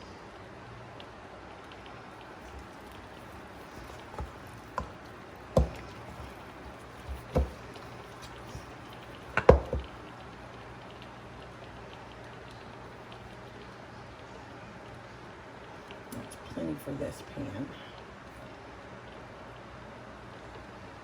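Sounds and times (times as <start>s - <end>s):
spoon scraping cake batter: 2.3s - 10.0s
spoon knocking against a dish: 2.4s - 8.7s, 9.3s - 9.9s.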